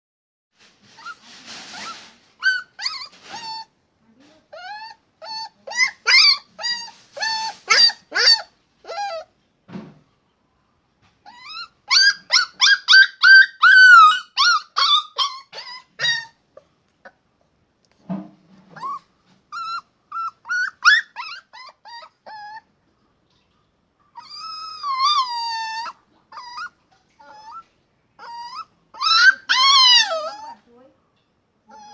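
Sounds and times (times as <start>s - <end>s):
dog whining and yipping: 0.9s - 3.7s, 4.5s - 9.3s, 11.2s - 16.4s, 18.7s - 22.7s, 24.1s - 30.7s, 31.7s - 31.9s.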